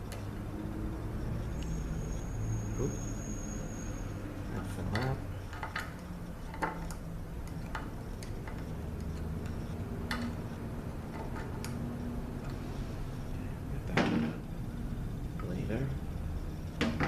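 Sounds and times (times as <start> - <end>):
small tools clicking and tapping: 4.9 - 10.4, 11.1 - 11.8.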